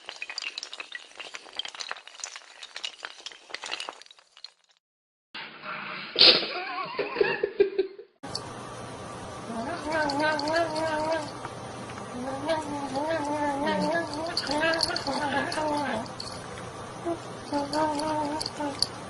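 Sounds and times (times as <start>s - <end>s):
hard objects clattering and breaking: 0.0s - 4.8s
wavering voice-like sound: 12.1s - 16.1s.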